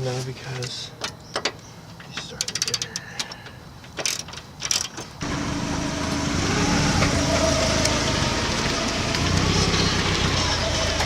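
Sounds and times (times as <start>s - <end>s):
vehicle engine running: 5.2s - 11.0s.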